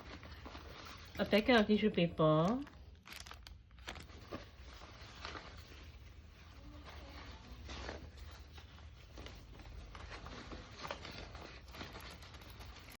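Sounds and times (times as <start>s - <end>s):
plastic wrappers rustling: 0.0s - 13.0s.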